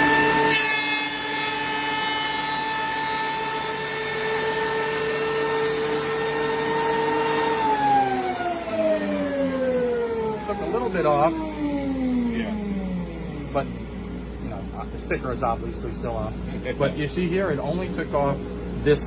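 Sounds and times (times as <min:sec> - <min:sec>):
jointer cutting board: 0:00.0 - 0:14.4
jointer motor whine: 0:00.0 - 0:19.0.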